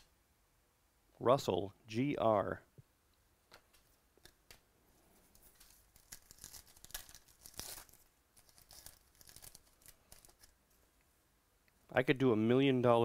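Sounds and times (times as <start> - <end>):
cards and packaging crinkling: 4.2 - 10.6.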